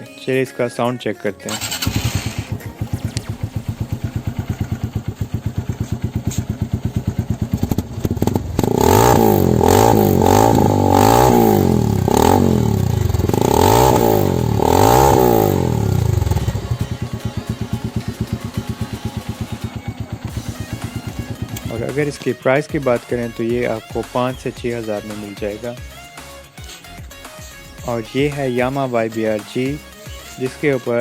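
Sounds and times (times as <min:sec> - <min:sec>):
motorcycle engine idling and revving: 0:01.5 - 0:31.0.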